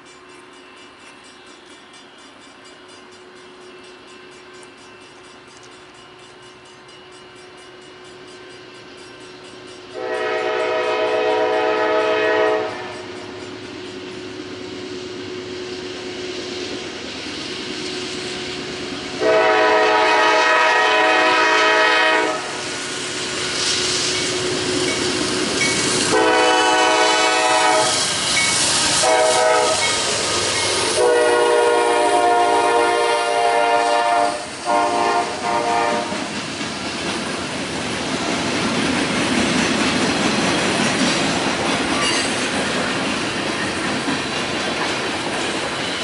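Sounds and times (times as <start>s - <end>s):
train wheel and rail noise: 0.0s - 46.0s
locomotive air horn: 10.0s - 13.1s, 19.2s - 22.7s, 26.1s - 28.0s, 29.0s - 30.0s, 31.0s - 36.2s.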